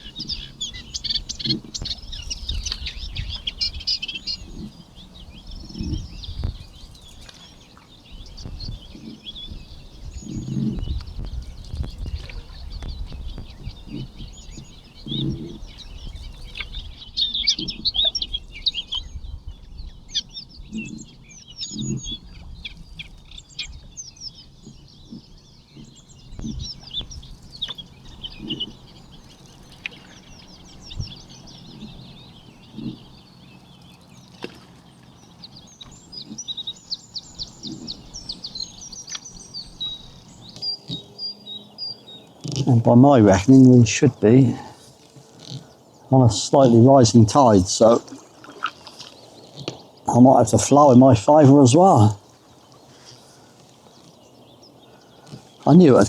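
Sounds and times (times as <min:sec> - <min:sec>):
birds chirping and trilling: 0:00.0 - 0:56.0
dull low thumps: 0:00.7 - 0:07.3, 0:08.1 - 0:21.0, 0:24.7 - 0:28.7.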